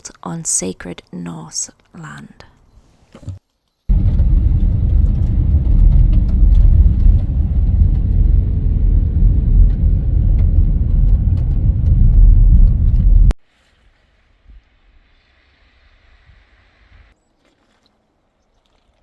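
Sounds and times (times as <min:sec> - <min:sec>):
car road and engine rumble: 0:03.3 - 0:13.4.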